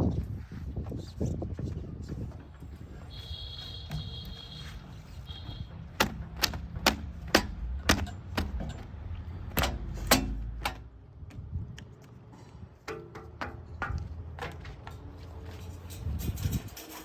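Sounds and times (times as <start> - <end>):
low engine rumble: 1.6 - 16.8
sharp metallic clanks: 5.3 - 10.9.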